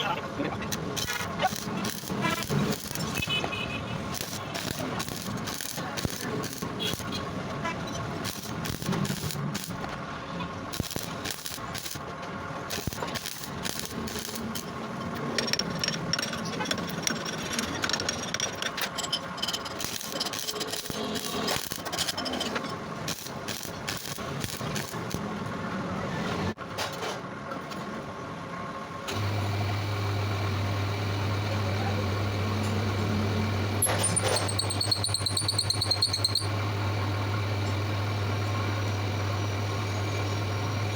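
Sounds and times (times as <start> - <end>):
metalwork crackling and clatter: 0.7 - 3.2, 4.1 - 7.2, 7.9 - 10.0, 10.7 - 12.1, 12.7 - 25.2
cutting tool squealing: 33.8 - 36.5.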